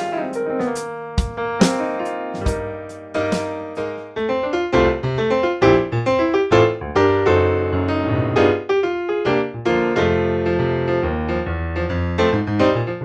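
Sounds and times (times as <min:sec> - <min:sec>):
piano-like keyboard chords: 0:00.0 - 0:13.0.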